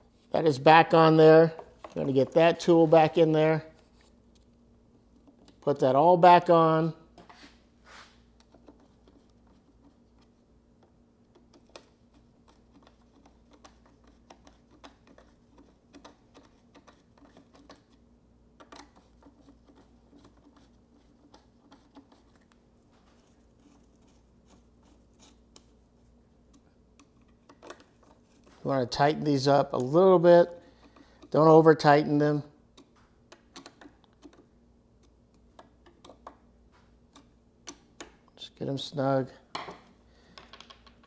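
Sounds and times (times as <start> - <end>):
clicks of plastic parts: 39.5 - 41.0.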